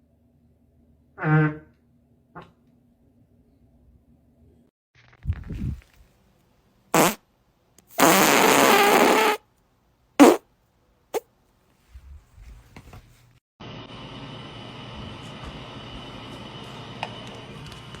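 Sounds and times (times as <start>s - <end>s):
farts: 7.0s - 7.2s, 7.9s - 9.4s, 10.2s - 10.4s.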